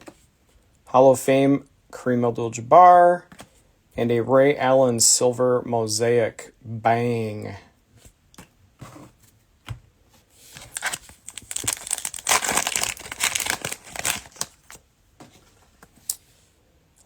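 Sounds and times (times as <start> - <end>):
plastic wrapper crinkling: 10.6 - 14.8.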